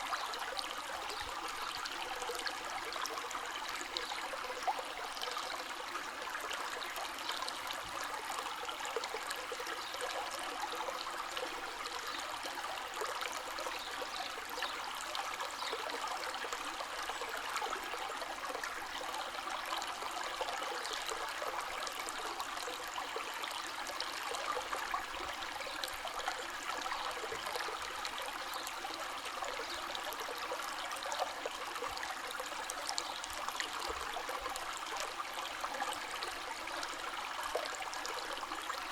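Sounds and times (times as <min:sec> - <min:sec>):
small splashes and trickles: 0:00.0 - 0:38.9.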